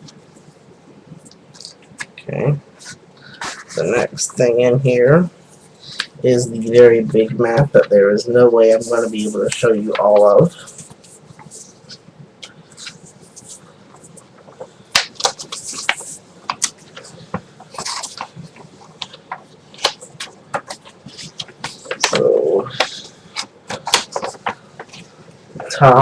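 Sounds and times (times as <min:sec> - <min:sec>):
paper map crinkling and rustling: 0:08.6 - 0:12.0, 0:12.7 - 0:26.0
sharp paper crackles: 0:14.4 - 0:25.8.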